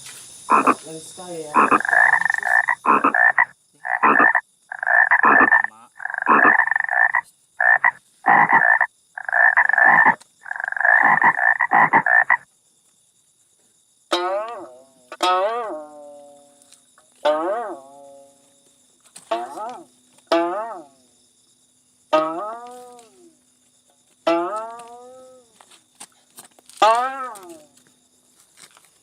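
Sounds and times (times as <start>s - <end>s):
frog croaking: 0.5s - 12.5s, 14.1s - 18.5s, 19.3s - 23.4s, 24.2s - 25.6s, 26.8s - 27.8s
plucked guitar notes: 14.1s - 16.3s, 19.3s - 20.9s, 22.1s - 23.0s, 24.3s - 25.1s.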